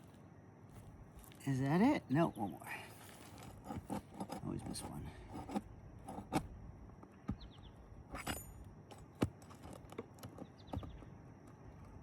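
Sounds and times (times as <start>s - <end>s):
bird chirping: 7.1s - 7.9s, 10.4s - 11.2s.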